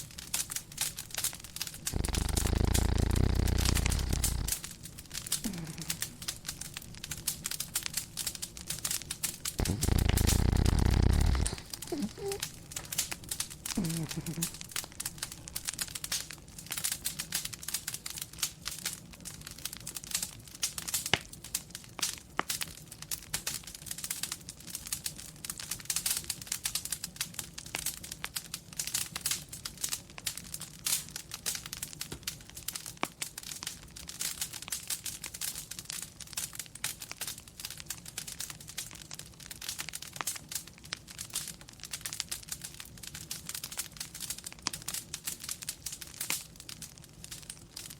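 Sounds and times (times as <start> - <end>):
wood fire crackling: 0.0 - 47.9.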